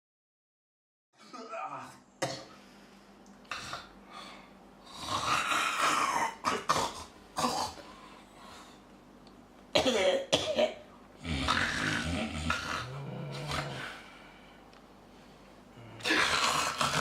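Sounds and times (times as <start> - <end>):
man snoring: 4.8 - 6.0, 11.2 - 14.2, 15.8 - 17.0.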